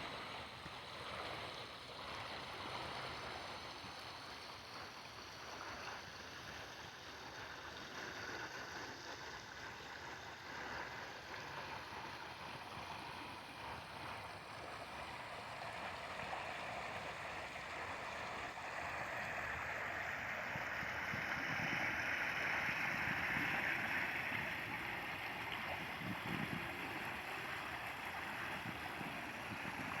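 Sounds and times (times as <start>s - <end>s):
water rushing: 11.2s - 30.0s.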